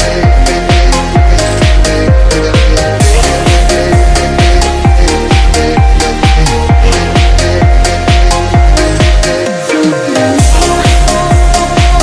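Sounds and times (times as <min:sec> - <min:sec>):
kick drum beat: 0:00.0 - 0:09.6, 0:10.4 - 0:12.0
electronic dance music: 0:00.0 - 0:12.0.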